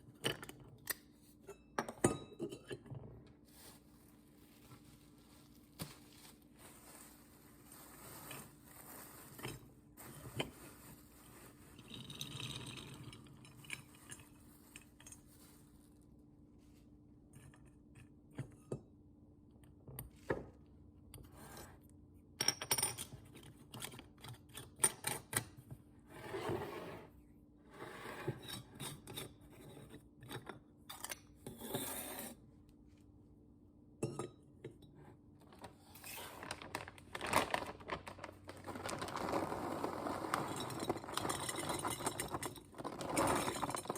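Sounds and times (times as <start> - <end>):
containers clinking and knocking: 38.8 - 43.9.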